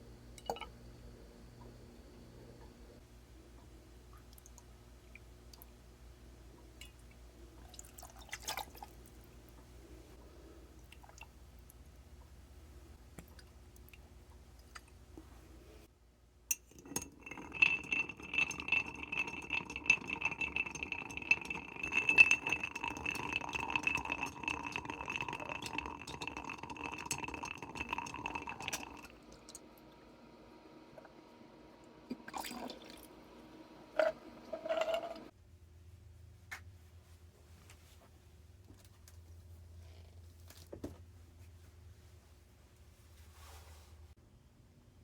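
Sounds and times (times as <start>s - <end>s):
ice clinking in glass: 16.5s - 26.2s.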